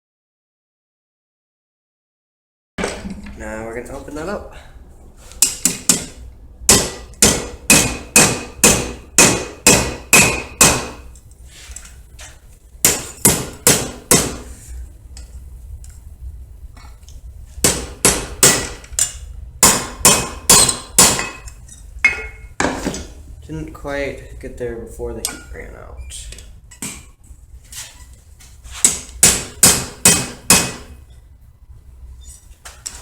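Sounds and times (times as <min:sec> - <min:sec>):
hammer ringing on hot steel: 0:06.7 - 0:11.0, 0:19.6 - 0:22.5.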